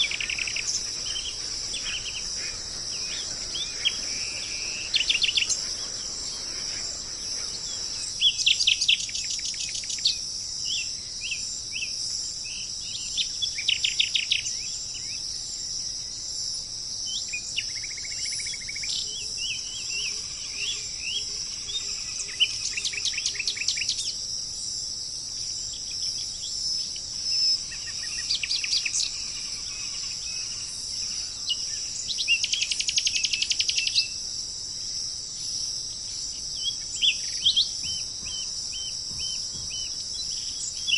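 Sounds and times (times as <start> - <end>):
songbirds singing trilled phrases: 0.0 - 15.2, 25.7 - 34.2, 35.4 - 40.9
high drone of insects: 0.0 - 40.9.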